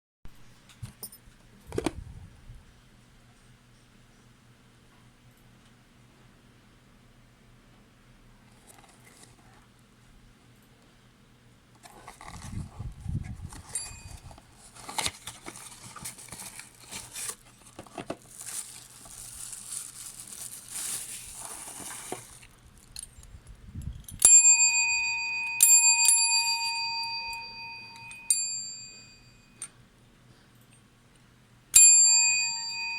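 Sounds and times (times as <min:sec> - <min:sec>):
rustling handling noise: 0:08.4 - 0:09.8, 0:11.8 - 0:23.4
service bell ding: 0:24.2 - 0:29.6, 0:31.8 - 0:32.9.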